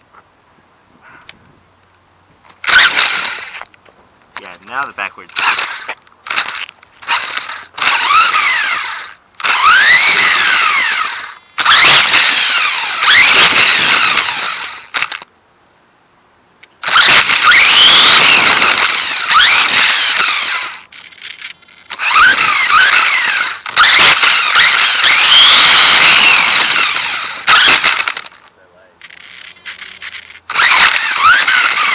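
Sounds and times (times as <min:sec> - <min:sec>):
rush of tyres and drivetrain: 0:02.3 - 0:04.1, 0:05.3 - 0:15.2, 0:16.8 - 0:31.9
electric motor and gears whining: 0:02.6 - 0:03.7, 0:04.4 - 0:15.3, 0:16.8 - 0:31.9.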